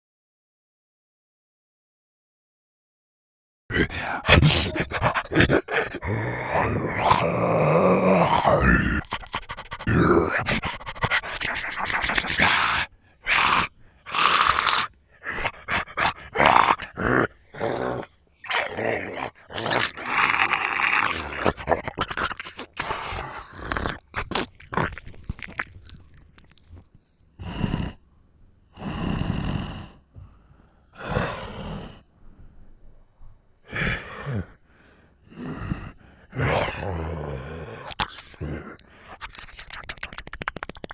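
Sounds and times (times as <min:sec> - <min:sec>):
person growling and groaning: 0:03.7 - 0:26.8, 0:27.4 - 0:28.0, 0:28.7 - 0:30.0, 0:31.0 - 0:32.1, 0:33.7 - 0:34.6, 0:35.3 - 0:40.9.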